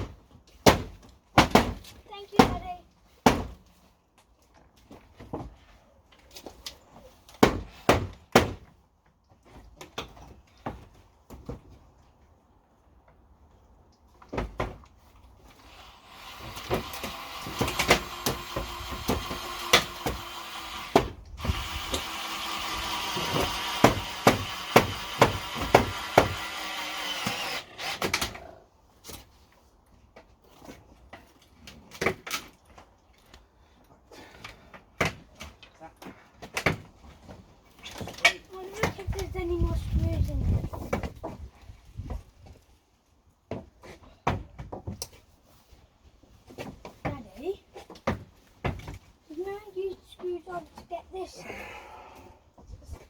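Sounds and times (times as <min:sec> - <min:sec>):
power drill running: 0:15.7 - 0:28.0.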